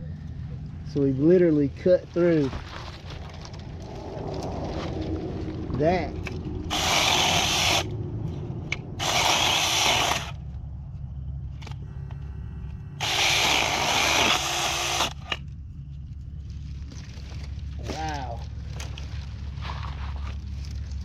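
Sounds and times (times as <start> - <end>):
electric chainsaw cutting tree: 6.6 - 7.9, 9.0 - 10.4, 13.0 - 15.4.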